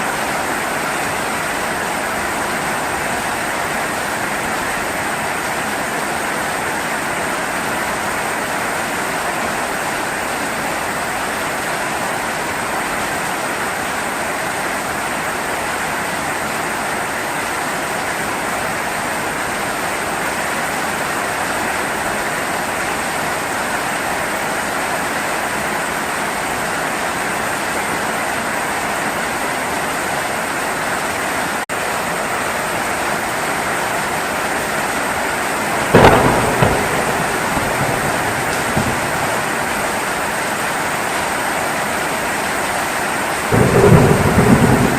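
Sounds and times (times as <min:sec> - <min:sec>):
heavy rain falling: 0:00.0 - 0:44.9.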